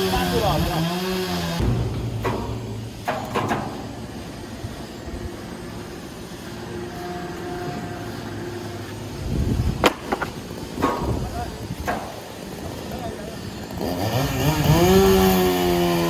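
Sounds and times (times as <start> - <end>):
machine engine humming: 0.0 - 14.1
sharp knocks: 1.5 - 4.9, 9.8 - 12.5.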